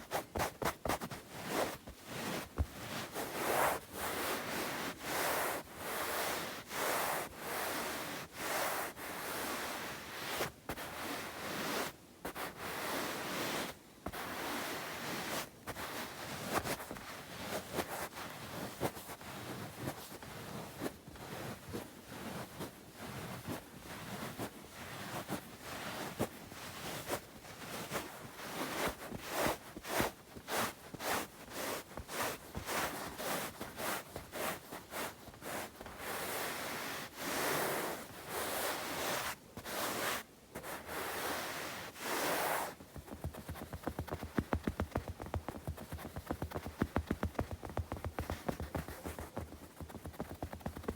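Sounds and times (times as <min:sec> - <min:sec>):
hands rubbing together: 0:43.0 - 0:50.9
light finger tapping: 0:43.0 - 0:50.9.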